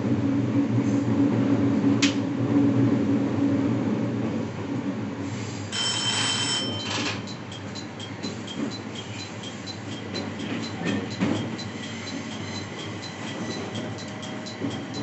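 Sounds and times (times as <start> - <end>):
train warning bell ringing: 5.7 - 15.0
train running rumble: 6.3 - 15.0.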